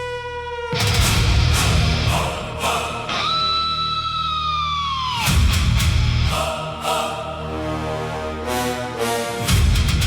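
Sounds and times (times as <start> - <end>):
heavy metal riff with drums: 0.7 - 3.8, 5.0 - 6.3, 9.5 - 10.0.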